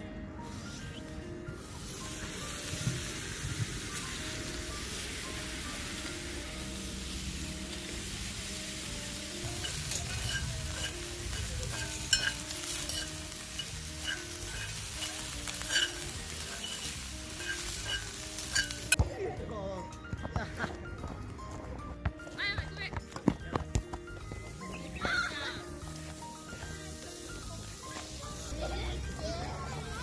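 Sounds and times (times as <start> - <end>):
meat sizzling in a skillet: 1.6 - 19.0, 24.6 - 30.0.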